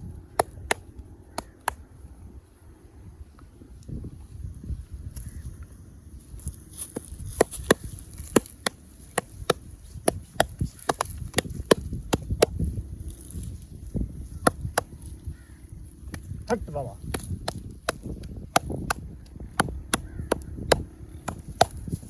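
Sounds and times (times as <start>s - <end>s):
low outdoor rumble: 0.0s - 22.0s
hands slapping in massage: 7.3s - 12.6s, 17.1s - 19.0s.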